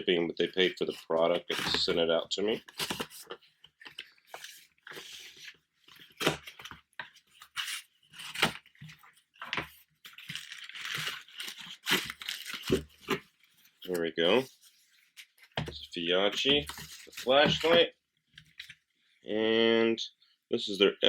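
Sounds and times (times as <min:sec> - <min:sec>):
packaging tearing and crinkling: 0:10.2 - 0:12.9.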